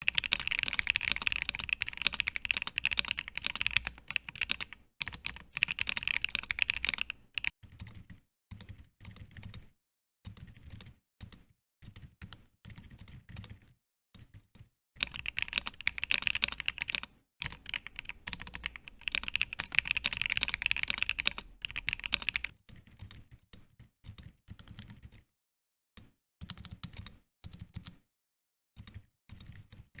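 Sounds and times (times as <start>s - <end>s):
typing on mechanical keyboard: 0.0s - 9.7s, 15.0s - 25.2s.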